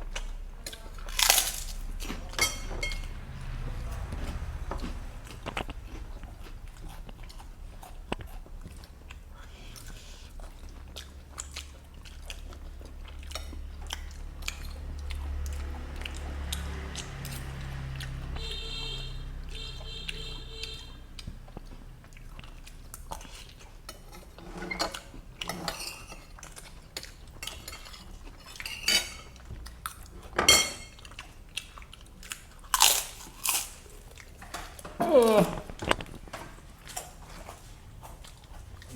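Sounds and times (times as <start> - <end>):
chewing and crunching: 0.0 - 18.5, 19.5 - 38.9
spoons clinking on plates: 2.4 - 3.1, 27.4 - 29.4, 30.4 - 31.0.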